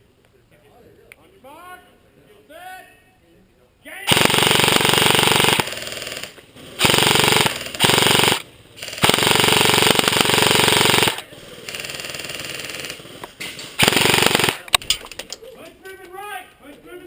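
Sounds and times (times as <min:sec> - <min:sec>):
airsoft rifles firing bursts: 0:04.1 - 0:14.9.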